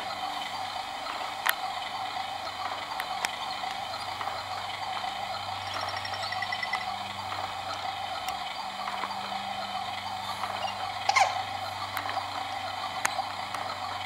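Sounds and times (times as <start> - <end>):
swing mechanism humming: 0.0 - 14.0
mechanical ticking: 0.2 - 14.0.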